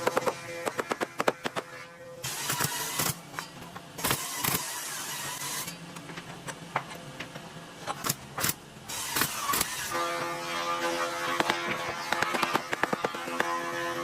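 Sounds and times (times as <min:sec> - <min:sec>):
rasping tool noise: 0:09.0 - 0:14.0.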